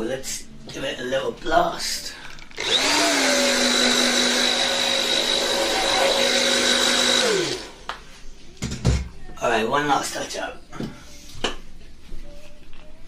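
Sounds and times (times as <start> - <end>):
hair dryer whirring: 2.5 - 8.0.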